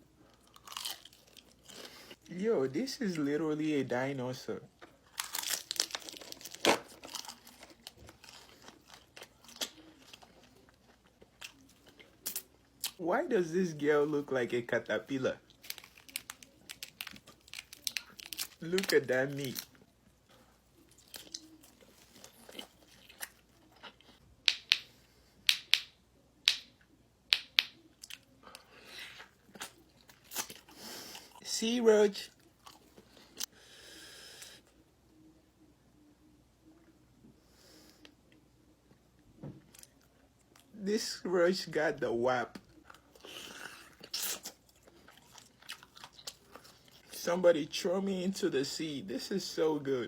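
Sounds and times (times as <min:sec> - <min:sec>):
shell crunching and cracking: 0:00.4 - 0:01.6, 0:04.8 - 0:13.0, 0:15.5 - 0:19.8.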